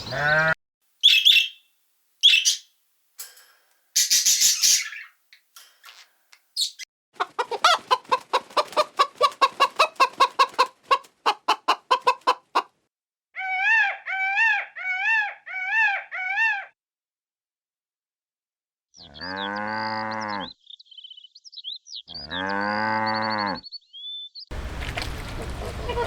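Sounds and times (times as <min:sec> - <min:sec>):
chicken rising-and-falling calls: 0:07.2 - 0:12.7, 0:24.7 - 0:26.0
chicken clucking rapidly: 0:07.2 - 0:12.8, 0:24.7 - 0:26.0.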